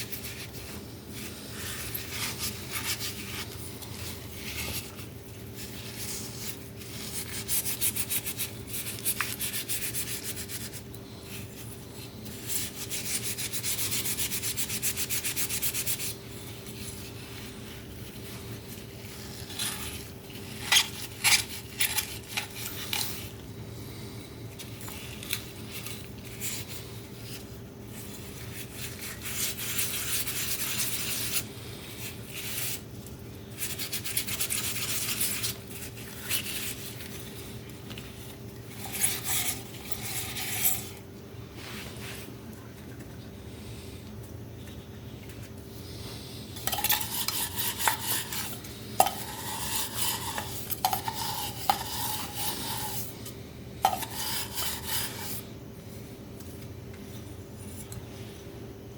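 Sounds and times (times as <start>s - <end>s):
faint steady hum: 0.0s - 58.9s
scraping on a hard object: 12.4s - 23.3s, 38.7s - 41.0s, 46.6s - 55.5s.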